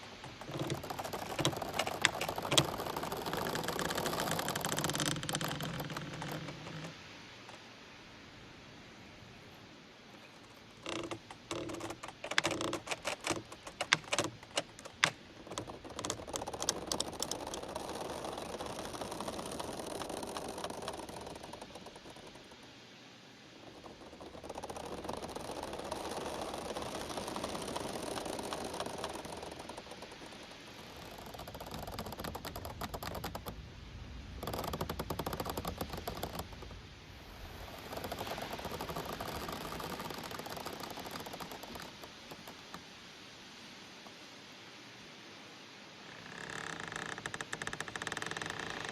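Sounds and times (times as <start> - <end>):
sharp clicks and cracks: 0.0 - 7.6, 10.4 - 22.7, 23.6 - 33.6, 34.3 - 36.8, 37.9 - 42.8
bamboo stems creaking: 0.0 - 8.0, 10.0 - 43.2, 46.0 - 48.9.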